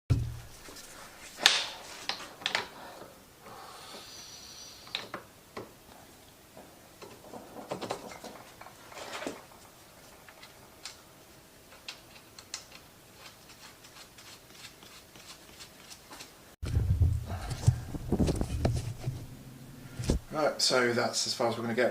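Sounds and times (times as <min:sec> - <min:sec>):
metal parts clicking and knocking: 0:07.0 - 0:11.0
scraping rub: 0:13.1 - 0:20.3.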